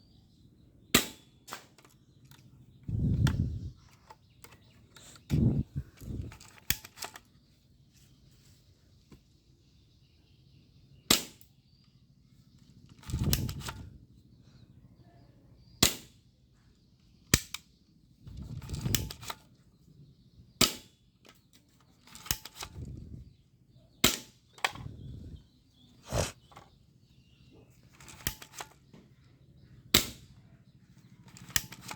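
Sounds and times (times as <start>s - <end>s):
airsoft gun shots: 1.0s - 1.7s.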